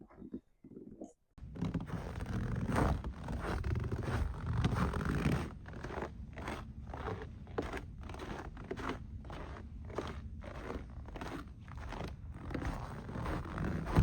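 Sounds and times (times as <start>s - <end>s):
footsteps on sand: 9.5s - 14.0s.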